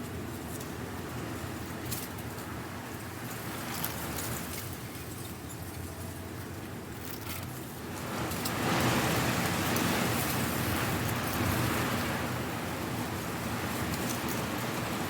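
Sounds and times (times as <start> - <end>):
strong wind blowing leaves: 7.8 - 15.0.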